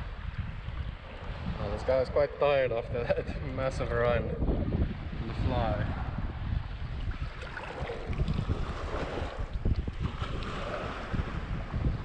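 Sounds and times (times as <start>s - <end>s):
wind buffeting microphone: 0.0s - 12.0s
small waves washing: 6.9s - 12.0s
water splashes: 7.0s - 12.0s.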